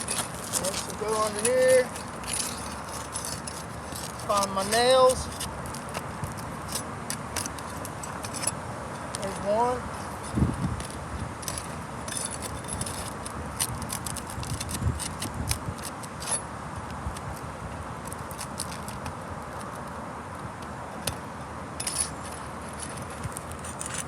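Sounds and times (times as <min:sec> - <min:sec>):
tools clicking and scraping shingles: 0:00.0 - 0:09.6, 0:10.2 - 0:16.5, 0:21.8 - 0:24.0.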